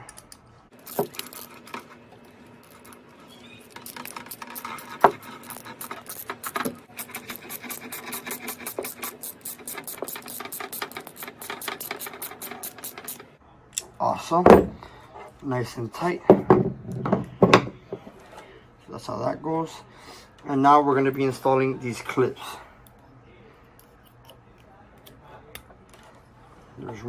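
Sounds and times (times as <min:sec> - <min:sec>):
ratchet wrench clicking: 0:03.6 - 0:13.2.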